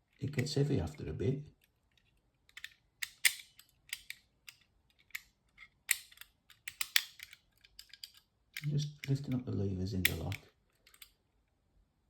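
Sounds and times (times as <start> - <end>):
lock pick clicking in lock: 2.5 - 9.4, 10.0 - 11.2.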